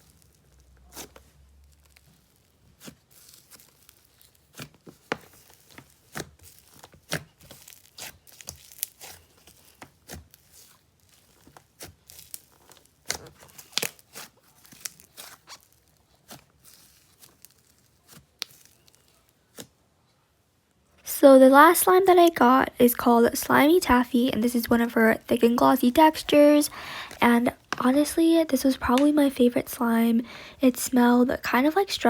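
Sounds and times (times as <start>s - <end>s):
slime popping and crackling: 0.0s - 19.7s.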